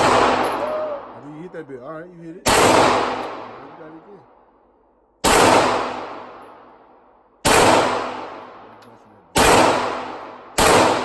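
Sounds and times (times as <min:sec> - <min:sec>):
gunshots with echo: 0:00.0 - 0:01.6, 0:02.4 - 0:04.0, 0:05.2 - 0:06.7, 0:07.4 - 0:11.0.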